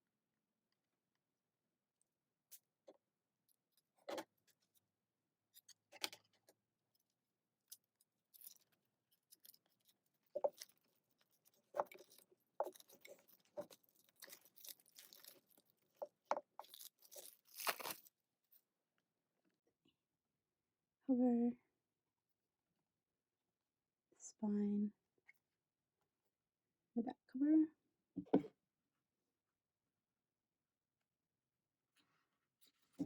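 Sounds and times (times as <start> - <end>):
shrink wrap crinkling and tearing: 7.7 - 18.2.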